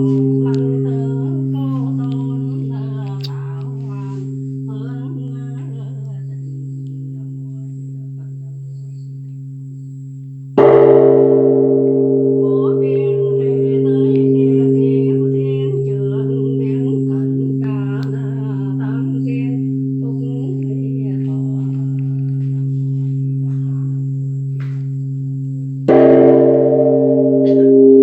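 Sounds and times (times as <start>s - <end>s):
voice chanting: 0.0s - 4.4s, 12.0s - 23.9s, 25.9s - 28.0s
temple bell ringing: 0.0s - 28.0s.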